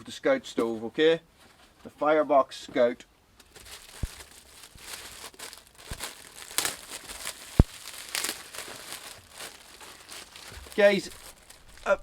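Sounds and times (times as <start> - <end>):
packaging crinkling: 3.4 - 12.0.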